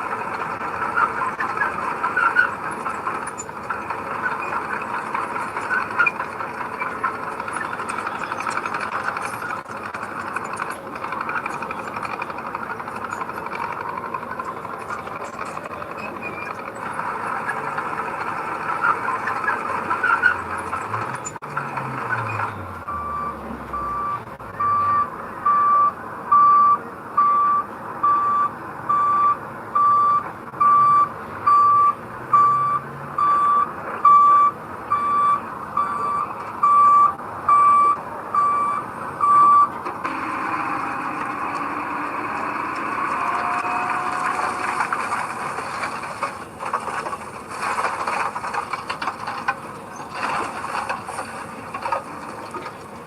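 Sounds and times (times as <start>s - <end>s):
construction vehicle engine running: 0.0s - 53.0s
reversing alarm beeping: 22.2s - 45.0s.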